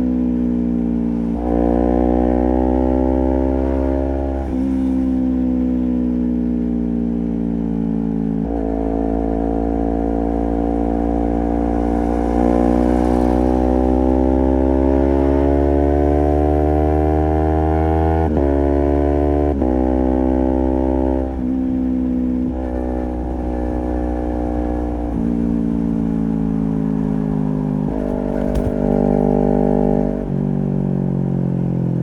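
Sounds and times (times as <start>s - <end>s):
motorcycle engine accelerating: 7.7s - 32.0s.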